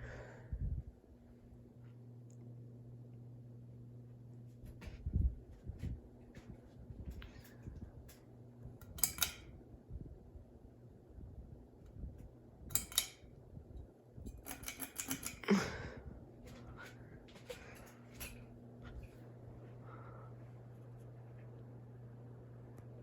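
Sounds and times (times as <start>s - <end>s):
ceiling fan motor humming: 0.0s - 23.0s
clicking and rattling: 14.3s - 15.5s.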